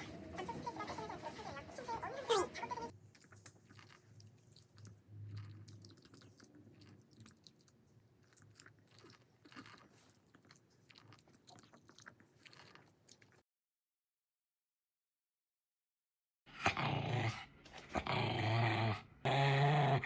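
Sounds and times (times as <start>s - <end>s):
dog mouth clicks and smacks: 3.1s - 13.4s.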